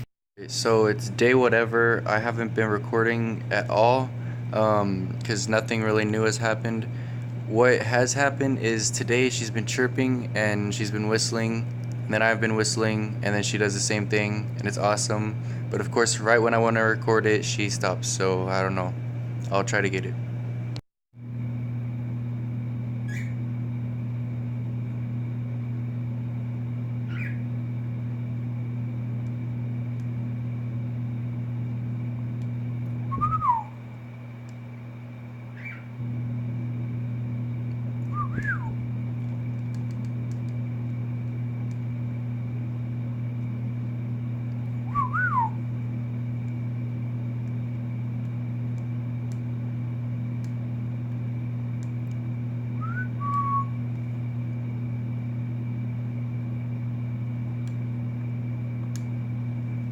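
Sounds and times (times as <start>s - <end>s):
steady low hum: 0.0s - 59.9s
cockatiel whistling: 23.1s - 23.4s, 33.1s - 33.7s, 38.1s - 38.8s, 44.9s - 45.6s, 52.8s - 53.7s.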